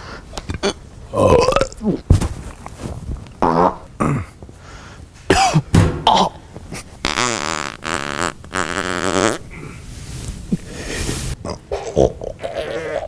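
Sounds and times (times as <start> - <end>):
person burping: 0.5 - 2.0, 3.4 - 4.4.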